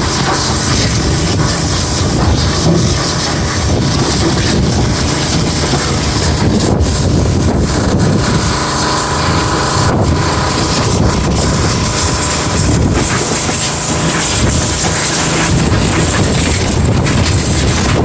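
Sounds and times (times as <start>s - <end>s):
pressure washer rushing: 0.0s - 18.0s.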